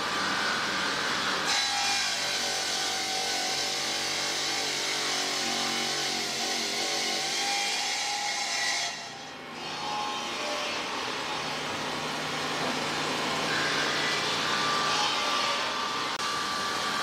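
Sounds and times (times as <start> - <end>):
stone-cutting saw grinding: 0.0 - 11.3, 12.6 - 17.0.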